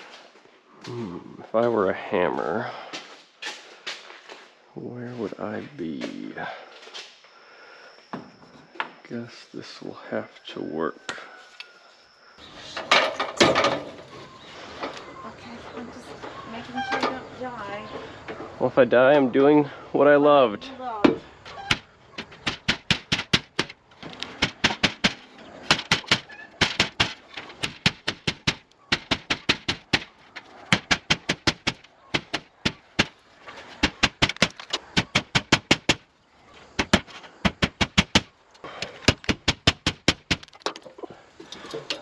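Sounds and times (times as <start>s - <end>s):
hammer driving nails into metal: 21.7s - 30.1s.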